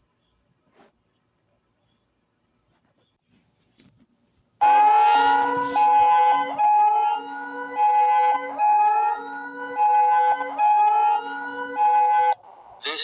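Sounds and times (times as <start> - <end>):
siren-like rising sweeps: 4.6 - 12.9
two-tone alarm signal: 4.6 - 12.9.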